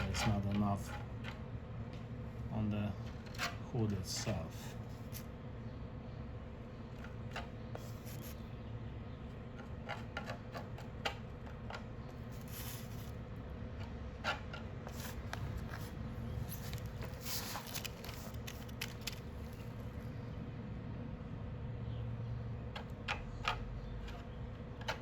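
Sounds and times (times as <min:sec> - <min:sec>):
small clicks and scrapes: 0:00.0 - 0:02.1, 0:03.0 - 0:05.3, 0:06.9 - 0:08.5, 0:09.3 - 0:19.8, 0:22.7 - 0:25.0
rustling: 0:14.9 - 0:19.8.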